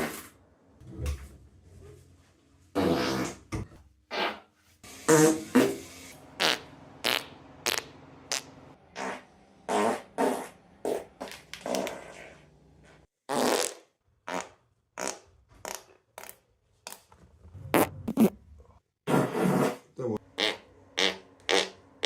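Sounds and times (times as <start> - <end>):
human farts: 2.7 - 3.5, 4.1 - 4.5, 6.4 - 12.2, 13.3 - 16.4, 17.6 - 18.4, 19.1 - 21.8.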